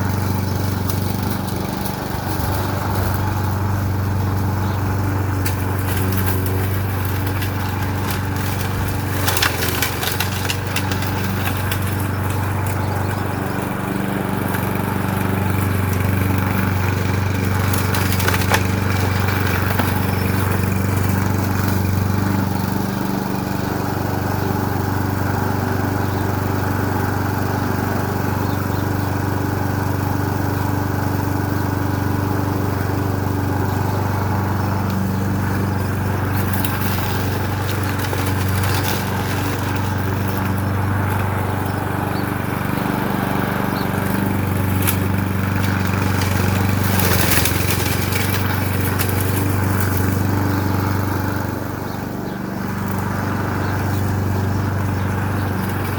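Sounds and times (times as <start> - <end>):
sharp clatters: 0.0 - 22.9, 34.8 - 51.5
lawn mower engine running: 0.0 - 55.9.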